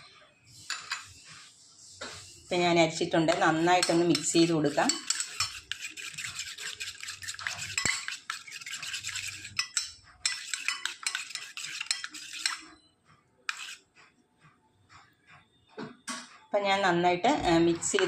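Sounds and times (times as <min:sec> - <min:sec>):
spoon scraping and clinking bowl: 0:00.6 - 0:01.2, 0:03.3 - 0:12.8, 0:13.5 - 0:13.8.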